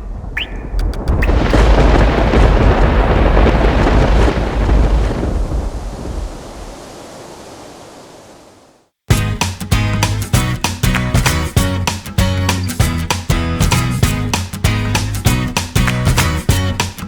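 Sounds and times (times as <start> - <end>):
loud rushing rumbling noise: 0.0 - 7.4.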